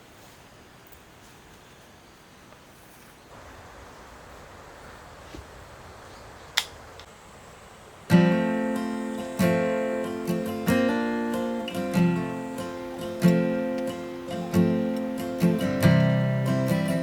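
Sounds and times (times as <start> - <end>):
faint steady hiss: 0.0 - 17.0
sharp click: 6.6 - 7.1
acoustic guitar strummed chords: 8.1 - 17.0.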